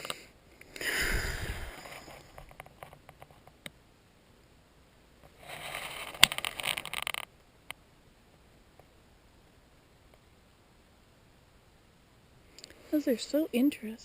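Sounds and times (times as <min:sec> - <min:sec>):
scraping rustle: 0:05.3 - 0:07.3.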